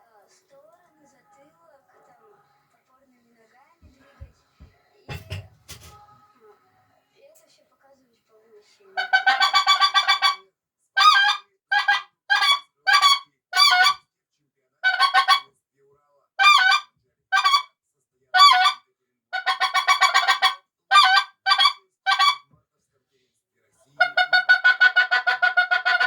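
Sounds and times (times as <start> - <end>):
goose call honks: 9.0 - 10.4, 11.0 - 14.0, 14.8 - 15.5, 16.4 - 17.7, 18.4 - 18.8, 19.4 - 22.4, 24.0 - 26.0.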